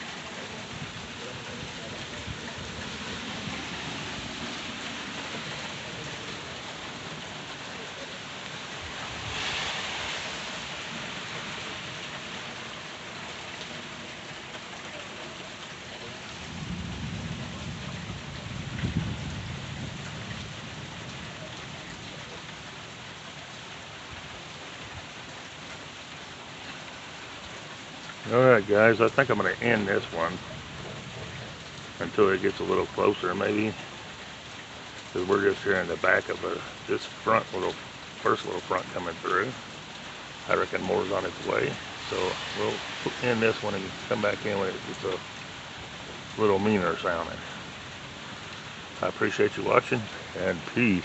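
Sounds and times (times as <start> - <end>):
heavy rain falling: 0.0 - 51.0
thunder rumbling: 16.4 - 21.2.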